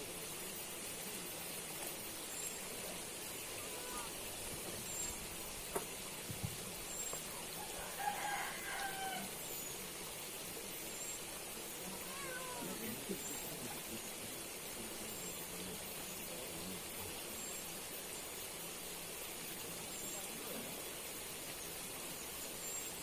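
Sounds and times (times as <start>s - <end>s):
steady outdoor hiss: 0.0s - 23.0s
animal calling: 3.5s - 5.2s, 11.8s - 13.4s.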